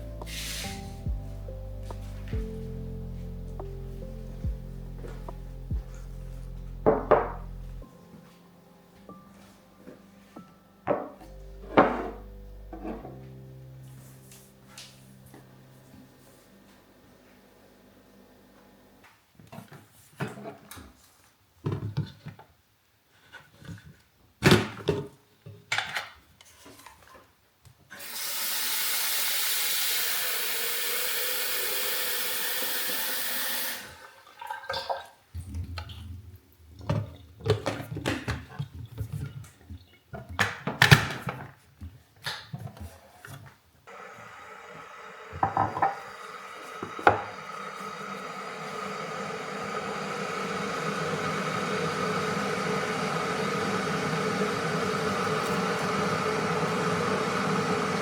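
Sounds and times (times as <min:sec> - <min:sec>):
steady hum: 0:00.0 - 0:19.0, 0:43.9 - 0:58.0
tap running: 0:06.8 - 0:07.8, 0:28.0 - 0:34.1, 0:43.9 - 0:58.0.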